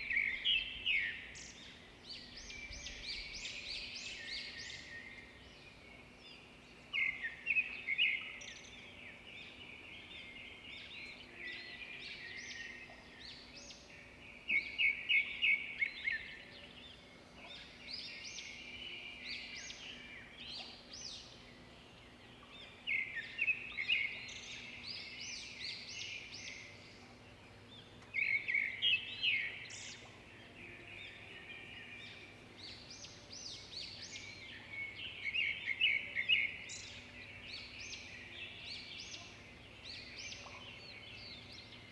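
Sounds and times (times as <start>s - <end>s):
songbirds chirping and twittering: 0.0s - 41.9s.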